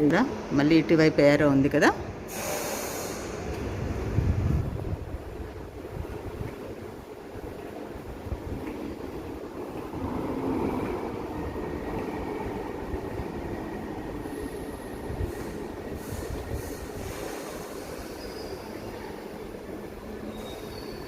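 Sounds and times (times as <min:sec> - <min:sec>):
underground train rumbling: 0:00.0 - 0:21.0
faint high wheel squeal: 0:17.7 - 0:19.0, 0:20.2 - 0:21.0.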